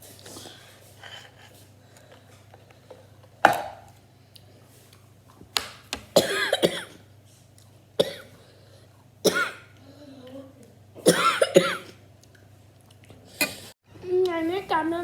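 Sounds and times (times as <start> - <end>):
woman coughing: 6.2 - 7.0, 8.0 - 8.3, 9.2 - 9.7, 11.0 - 12.0.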